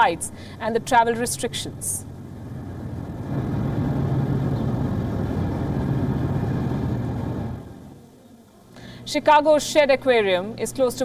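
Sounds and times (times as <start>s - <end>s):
vehicle engine humming: 0.0s - 8.1s.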